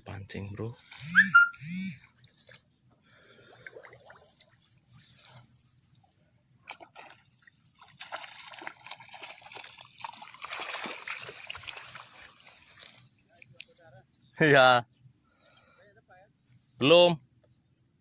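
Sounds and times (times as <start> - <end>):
shallow water trickling and sloshing: 2.1 - 13.8
water dripping: 6.7 - 12.6.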